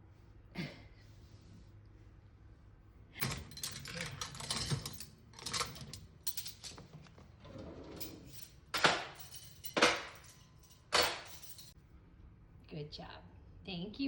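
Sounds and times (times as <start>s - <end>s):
dishes and utensils clattering: 3.2s - 11.8s.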